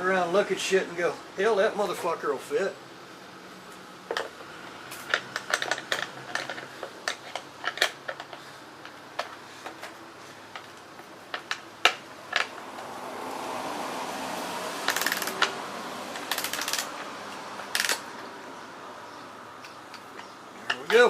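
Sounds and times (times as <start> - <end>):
hand tools clinking on metal: 20.0 - 21.0.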